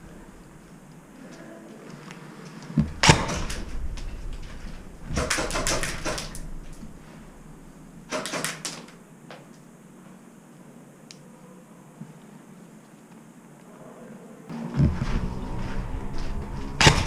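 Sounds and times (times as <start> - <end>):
airsoft gun shots: 3.0 - 3.8, 5.1 - 6.5, 8.1 - 9.0, 16.8 - 17.0.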